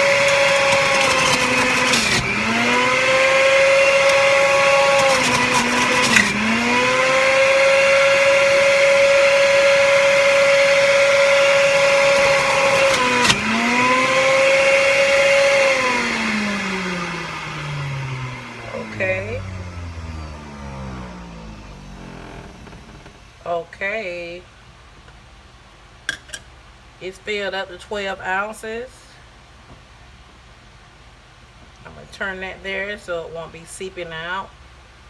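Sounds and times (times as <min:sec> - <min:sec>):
juicer motor whining: 0:00.0 - 0:23.4.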